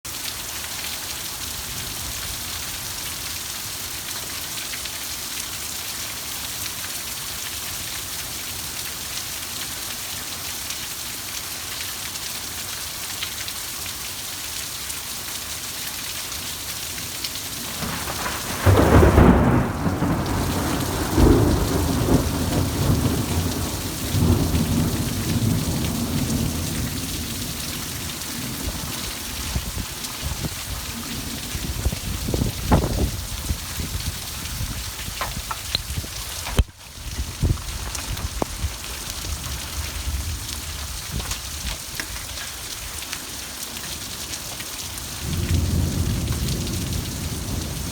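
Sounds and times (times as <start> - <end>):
rain hissing: 15.1 - 47.9
thunder clap rumbling: 17.6 - 36.0, 45.3 - 47.9.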